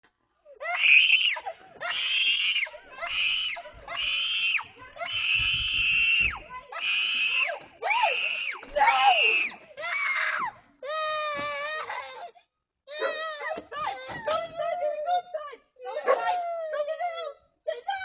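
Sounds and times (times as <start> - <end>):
shrill screams: 0.6 - 12.0.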